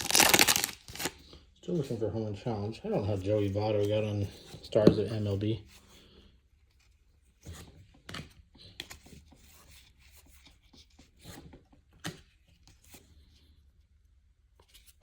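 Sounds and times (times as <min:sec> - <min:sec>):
cards rustling and clicking: 0:00.0 - 0:01.4, 0:03.0 - 0:05.3, 0:06.7 - 0:13.2.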